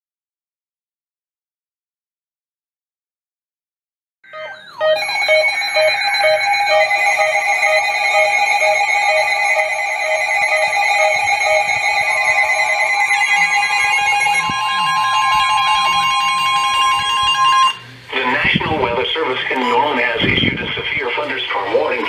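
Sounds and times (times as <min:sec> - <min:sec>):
beeping alert tone: 0:04.3 - 0:17.8
overlapping steady alert tones: 0:04.3 - 0:17.8.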